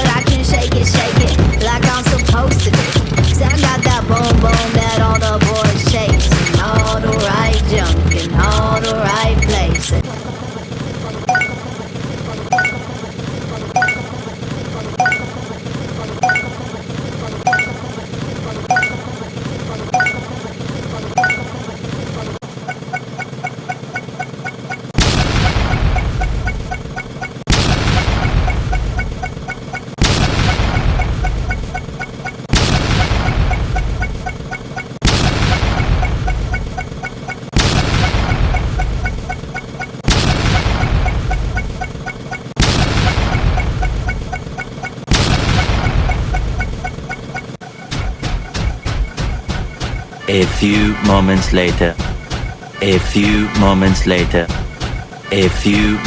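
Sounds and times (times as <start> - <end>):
fast ticking of pitched pips: 0.0 - 56.0
loud explosion booms: 25.0 - 26.2, 27.5 - 29.0, 30.0 - 31.5, 32.5 - 34.0, 35.0 - 36.3, 37.6 - 39.0, 40.1 - 41.6, 42.6 - 44.1, 45.1 - 46.6.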